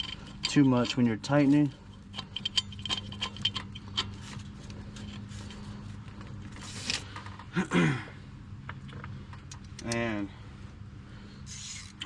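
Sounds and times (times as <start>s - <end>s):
scraping rustle: 0.0s - 7.3s
metallic clicks and scraping: 0.0s - 7.5s, 11.4s - 12.0s.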